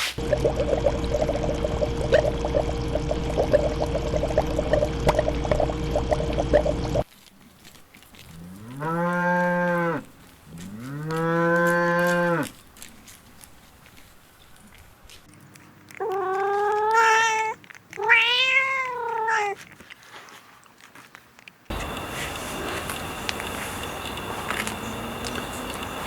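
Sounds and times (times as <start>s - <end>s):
cattle mooing: 8.3s - 12.5s, 21.8s - 26.0s.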